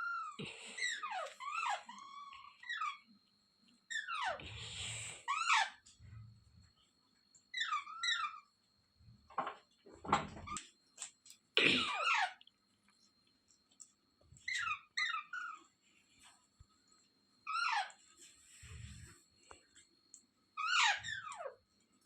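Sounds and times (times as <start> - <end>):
parakeet calling: 7.5 - 8.5, 14.5 - 15.7, 17.4 - 18.0, 20.6 - 21.5.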